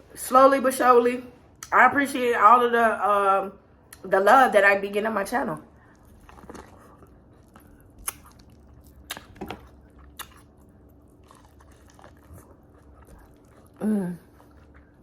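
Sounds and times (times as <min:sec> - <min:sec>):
person chewing food: 0:05.7 - 0:15.0
person humming mm: 0:13.8 - 0:14.3.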